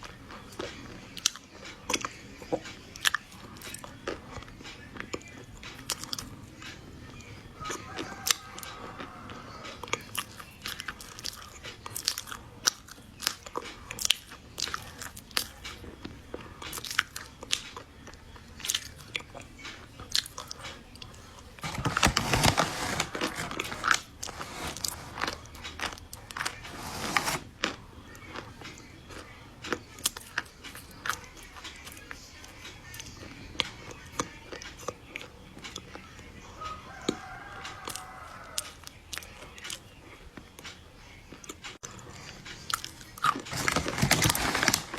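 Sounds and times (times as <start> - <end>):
chocolate crunching while chewing: 0.0 - 35.9, 36.9 - 44.9
crisp crunches and crackles: 21.6 - 27.8, 43.2 - 44.9.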